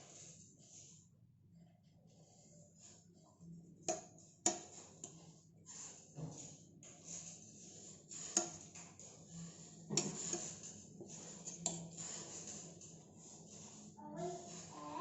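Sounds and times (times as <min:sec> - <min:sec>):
scraping and rustling: 0:05.8 - 0:15.0.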